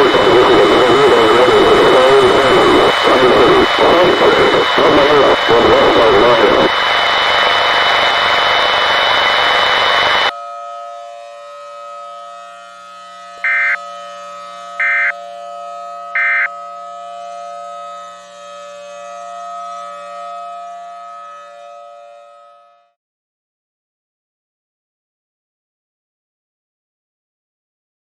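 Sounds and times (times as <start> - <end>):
static hiss: 0.0 - 10.3
civil defense siren wailing: 8.9 - 23.0
short high beeps: 13.5 - 13.8, 14.8 - 15.1, 16.2 - 16.5.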